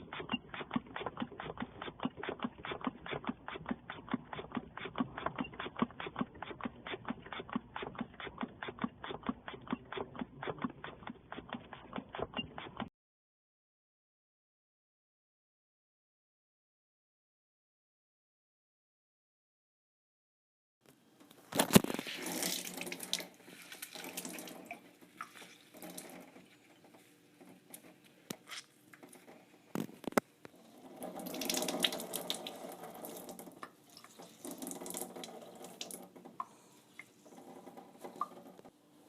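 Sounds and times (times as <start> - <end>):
tap water splashing into sink: 30.9 - 38.6.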